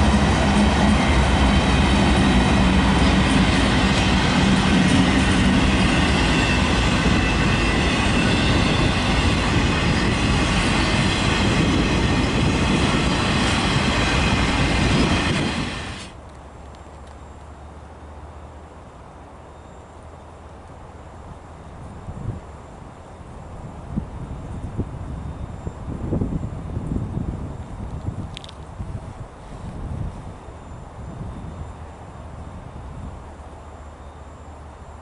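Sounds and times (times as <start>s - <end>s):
train wheels clattering on rail: 0.0s - 16.2s
faint high squeal: 19.5s - 20.0s, 24.2s - 26.6s, 30.4s - 33.1s, 33.7s - 34.9s.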